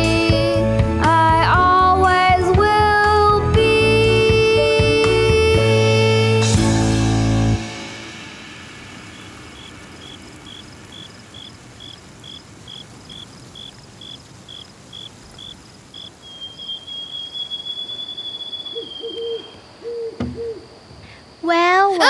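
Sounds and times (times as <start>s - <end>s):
insects chirping: 7.8s - 22.0s
low owl hoots: 16.2s - 20.8s.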